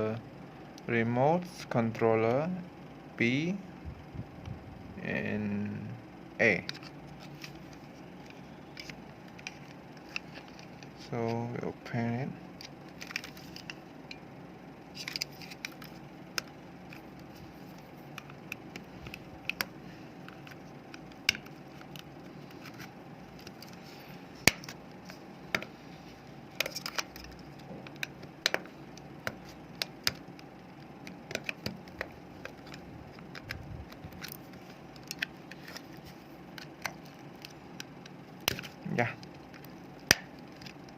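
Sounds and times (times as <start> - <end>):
faint steady hum: 0.0 - 40.9.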